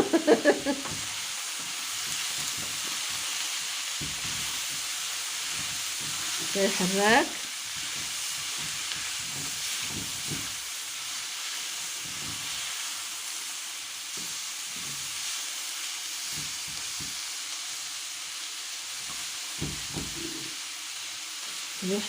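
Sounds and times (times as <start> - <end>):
food sizzling in oil: 0.0 - 22.0
soft stirring knocks: 0.8 - 3.2, 4.0 - 6.8.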